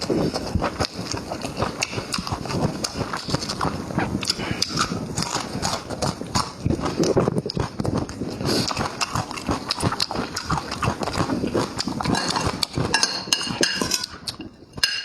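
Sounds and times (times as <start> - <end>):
wet mouth clicks: 0.0 - 13.0
chewing and lip smacking: 0.0 - 14.6.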